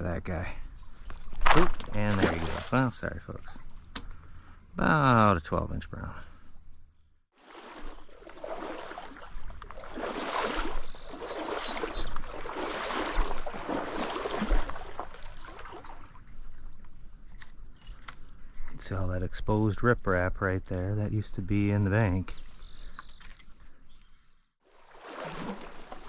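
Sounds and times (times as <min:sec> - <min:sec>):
water sloshing from wading: 0:01.2 - 0:02.9, 0:07.3 - 0:16.8, 0:24.6 - 0:26.0.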